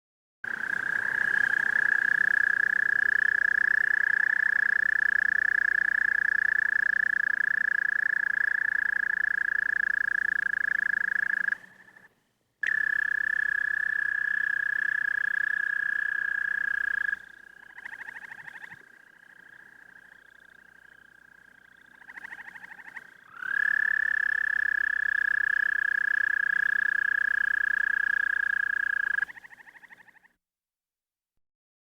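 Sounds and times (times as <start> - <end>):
toad trilling: 0.5 - 12.0, 12.6 - 30.3
soft toad calls: 0.5 - 30.4.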